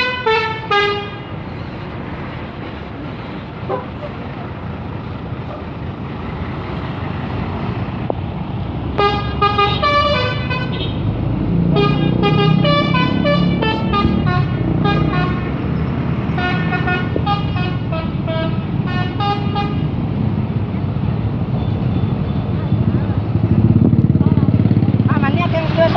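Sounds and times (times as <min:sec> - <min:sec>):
multi-tone musical air horn: 0:00.0 - 0:01.4, 0:09.0 - 0:11.0, 0:11.8 - 0:15.6, 0:16.4 - 0:19.9
bus engine running: 0:00.0 - 0:25.9.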